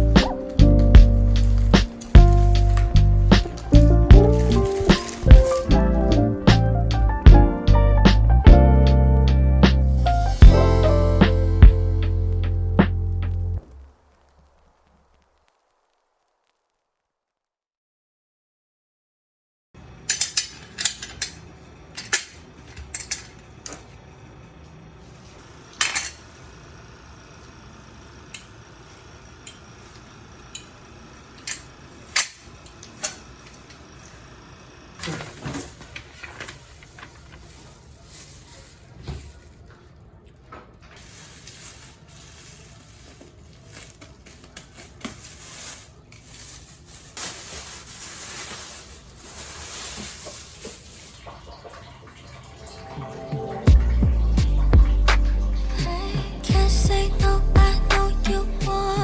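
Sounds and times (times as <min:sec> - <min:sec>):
rustling handling noise: 0:00.0 - 0:06.2, 0:35.0 - 0:51.5.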